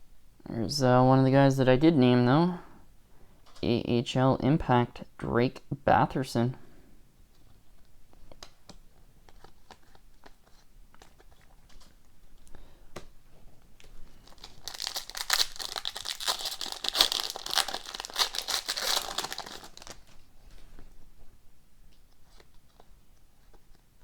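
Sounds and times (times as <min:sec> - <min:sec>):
card pack wrapper tearing: 0:14.1 - 0:20.2.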